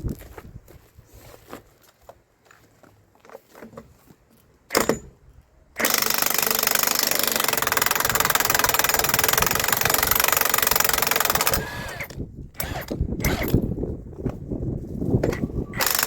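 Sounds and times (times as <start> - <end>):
impact wrench hammering: 4.7 - 5.1
sharp metal clank: 4.7 - 5.2.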